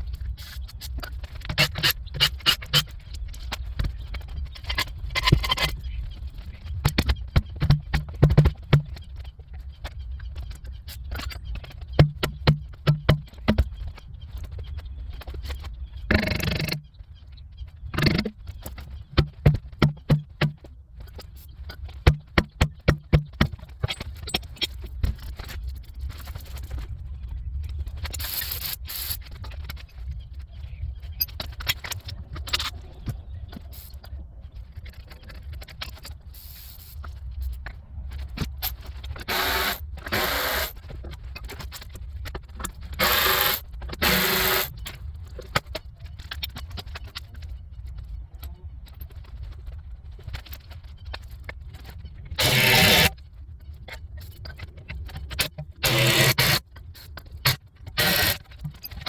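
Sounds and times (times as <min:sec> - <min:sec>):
tools and metal parts clattering: 0:00.2 - 0:16.8, 0:27.7 - 0:30.2, 0:31.1 - 0:59.0
noisy bursts: 0:39.3 - 0:40.7, 0:43.0 - 0:44.7.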